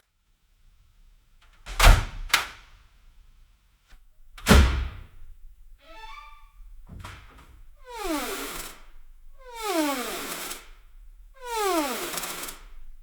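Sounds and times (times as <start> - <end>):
door slamming: 1.7 - 2.6, 4.4 - 5.2, 6.0 - 8.3.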